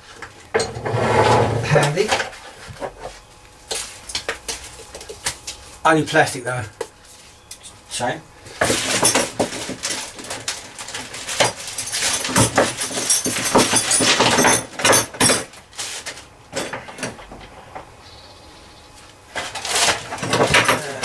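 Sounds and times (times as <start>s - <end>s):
tool tray handling clatter: 0.6s - 1.9s.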